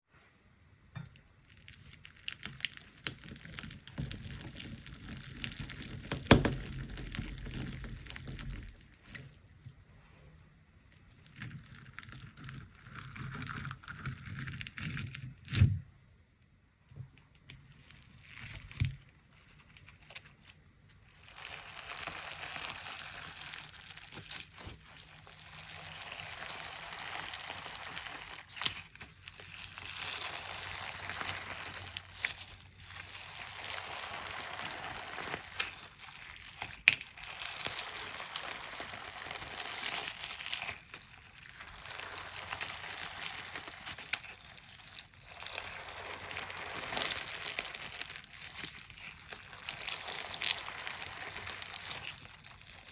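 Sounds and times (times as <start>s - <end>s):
crunchy slime squeezed by hand: 21.1s - 52.9s.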